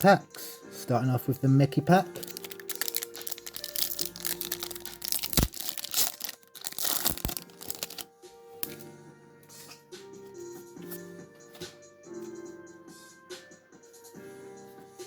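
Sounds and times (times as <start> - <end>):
background music: 0.0 - 15.0
foil wrapper crinkling: 2.0 - 8.1.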